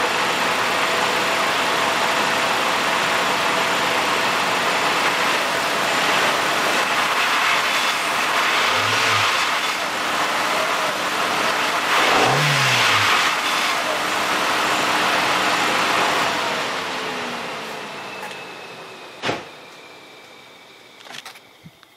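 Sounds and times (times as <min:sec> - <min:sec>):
car engine revving: 0:05.2 - 0:17.3.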